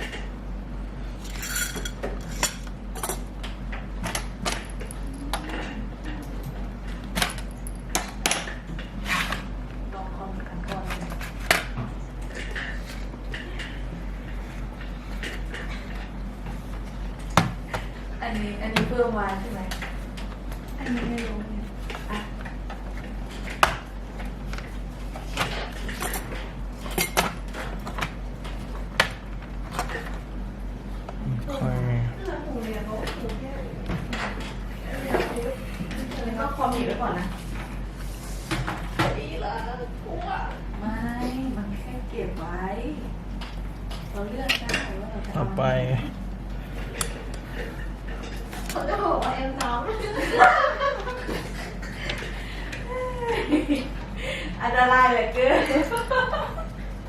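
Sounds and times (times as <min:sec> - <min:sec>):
steady low hum: 0:00.0 - 0:57.0
clatter of hard objects handled: 0:01.2 - 0:03.2.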